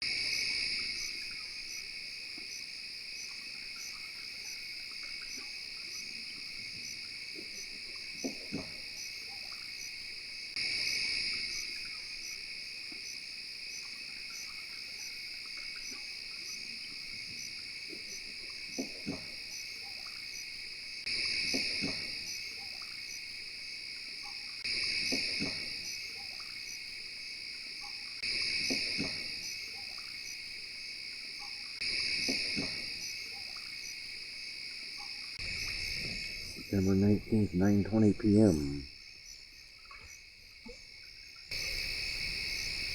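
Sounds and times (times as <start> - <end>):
crickets and katydids trilling: 0.0 - 42.9
short low calls: 35.4 - 38.9.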